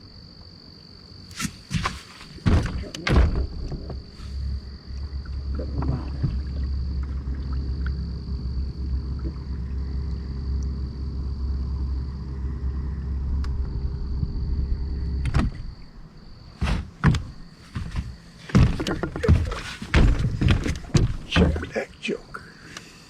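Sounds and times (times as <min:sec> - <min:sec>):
loud thumps: 0:01.4 - 0:04.2, 0:15.1 - 0:21.8
steady low rumble: 0:02.8 - 0:21.8.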